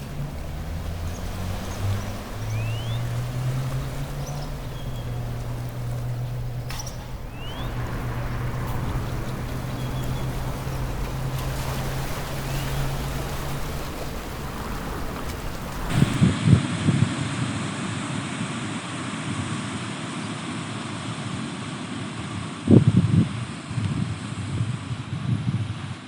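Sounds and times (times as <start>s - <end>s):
low engine hum: 0.0s - 16.4s
constant wash of noise: 0.0s - 26.0s.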